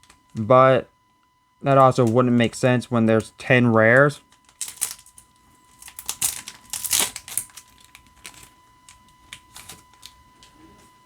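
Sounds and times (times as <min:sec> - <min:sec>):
foil wrapper crinkling: 0:04.2 - 0:10.6
wrapper clicks and snaps: 0:04.4 - 0:05.2, 0:05.8 - 0:10.2.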